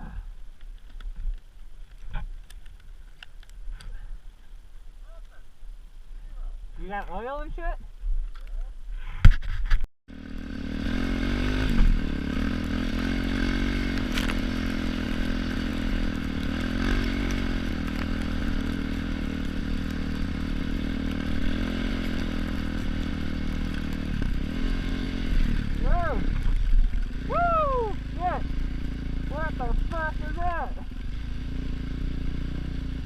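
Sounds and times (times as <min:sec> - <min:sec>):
motorcycle engine running: 0:10.1 - 0:33.0.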